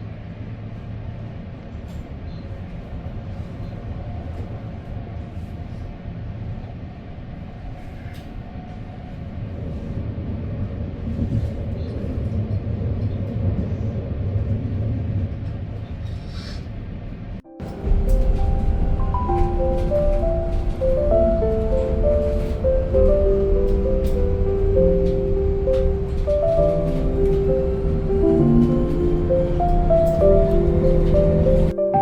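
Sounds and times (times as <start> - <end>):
passenger train rumbling: 0.0 - 32.0.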